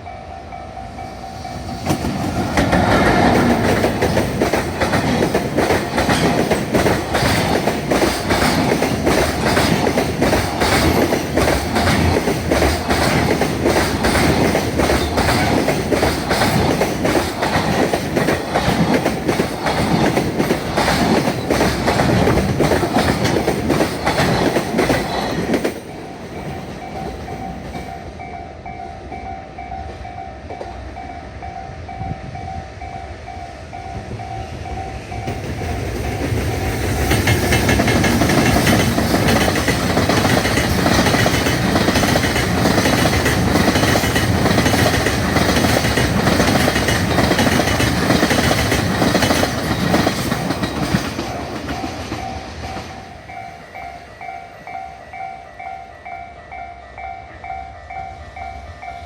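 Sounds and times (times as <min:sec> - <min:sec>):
level-crossing warning bell: 0:00.0 - 0:24.2, 0:24.8 - 0:59.0
train rumble: 0:00.0 - 0:59.0
train wheels clattering over rails: 0:01.6 - 0:27.9, 0:35.0 - 0:53.5.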